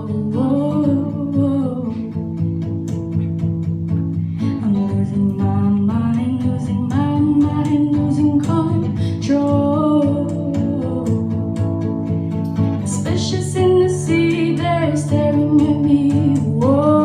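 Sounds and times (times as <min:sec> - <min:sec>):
girl singing: 0:00.0 - 0:02.3, 0:04.4 - 0:11.8, 0:12.7 - 0:17.0
strummed guitar: 0:00.0 - 0:17.0.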